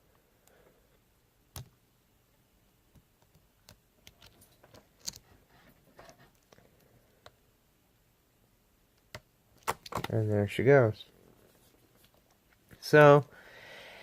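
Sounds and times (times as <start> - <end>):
lock pick clicks and scrapes: 4.0 - 5.3.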